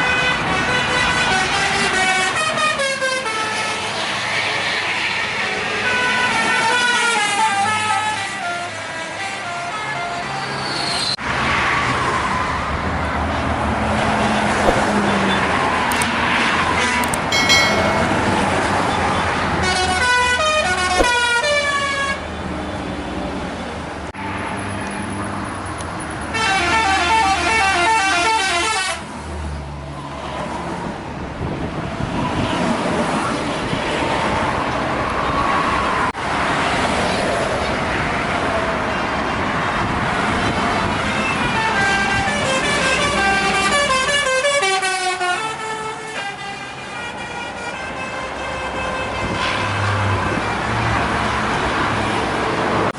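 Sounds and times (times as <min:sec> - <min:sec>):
bus musical horns: 0:00.0 - 0:03.9, 0:05.7 - 0:10.6, 0:26.2 - 0:29.1, 0:41.2 - 0:50.7
bus engines: 0:00.0 - 0:17.4, 0:18.0 - 0:52.9
passing traffic: 0:00.0 - 0:52.9.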